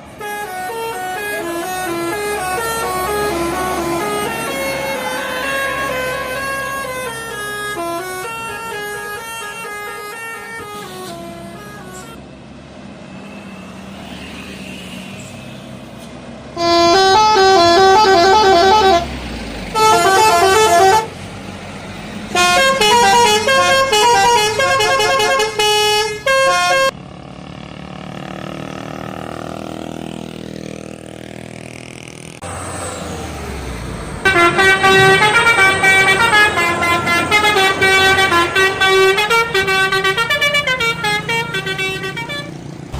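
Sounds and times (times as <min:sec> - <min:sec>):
bus musical air horn: 0:00.0 - 0:12.3, 0:16.0 - 0:21.3, 0:22.2 - 0:27.0, 0:34.2 - 0:42.7
bus engine: 0:00.0 - 0:42.9
road traffic: 0:00.0 - 0:42.9.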